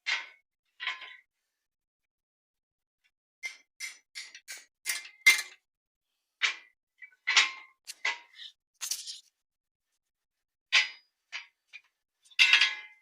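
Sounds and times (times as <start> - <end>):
metal workpieces clinking: 12.3 - 13.0.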